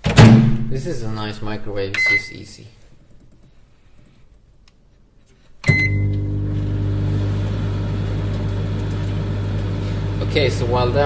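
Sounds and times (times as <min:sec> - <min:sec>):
short beep: 0:05.6 - 0:06.2
microwave oven humming: 0:05.7 - 0:11.0
microwave oven click: 0:07.4 - 0:09.8.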